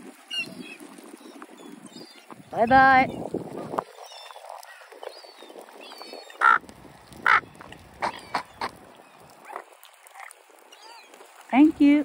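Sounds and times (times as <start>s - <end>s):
ducks quacking: 6.4s - 8.8s.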